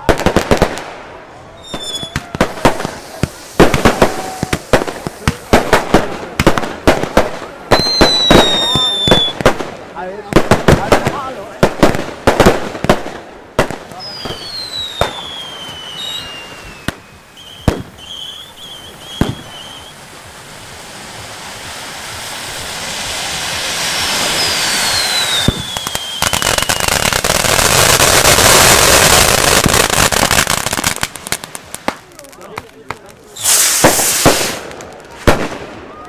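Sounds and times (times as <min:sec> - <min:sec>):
firework bangs: 0:00.0 - 0:36.0
firework crackling: 0:00.0 - 0:36.0
falling firework whistles: 0:01.4 - 0:05.5, 0:07.7 - 0:09.4, 0:13.9 - 0:31.0, 0:33.3 - 0:36.0.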